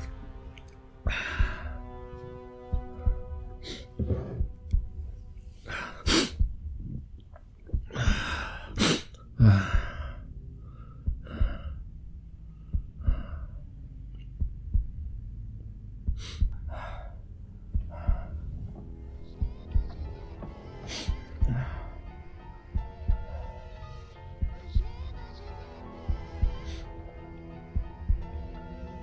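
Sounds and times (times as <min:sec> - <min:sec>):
man breathing: 0:07.8 - 0:13.7, 0:16.1 - 0:18.8.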